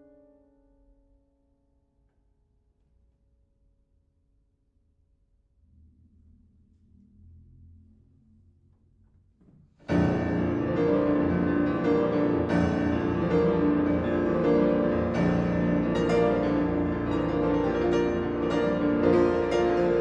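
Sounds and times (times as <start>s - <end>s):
solo piano classical piece: 9.9s - 20.0s.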